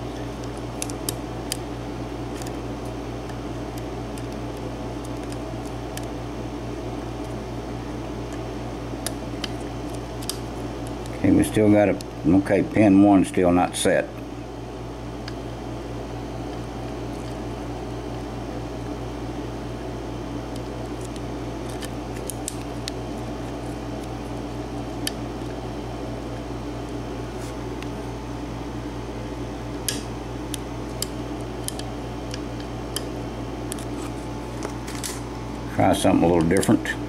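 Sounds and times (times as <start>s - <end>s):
air conditioner humming: 0.0s - 37.0s.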